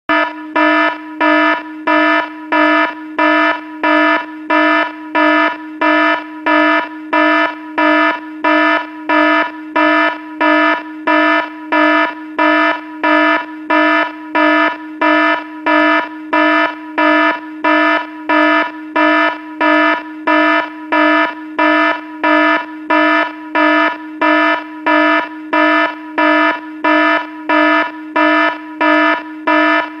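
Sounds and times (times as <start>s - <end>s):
buzzy electronic alarm pulsing: 0.1s - 30.0s.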